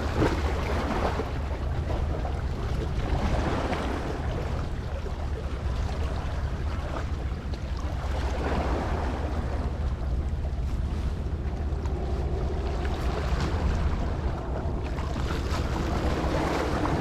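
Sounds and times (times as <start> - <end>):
sea waves washing: 0.0 - 17.0
wind rumble on microphone: 0.0 - 17.0.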